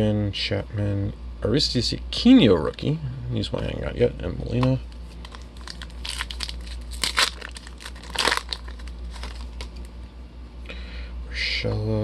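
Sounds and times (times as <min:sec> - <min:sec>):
foil wrapper crinkling and tearing: 0:05.1 - 0:10.0.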